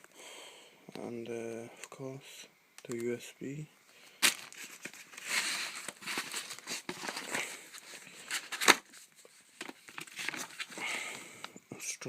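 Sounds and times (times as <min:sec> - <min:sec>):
packaging crinkling and rustling: 0:04.2 - 0:11.2.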